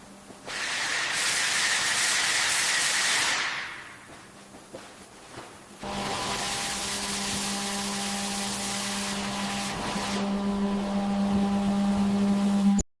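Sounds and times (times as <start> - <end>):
engine running with hiss: 0.5 - 3.9.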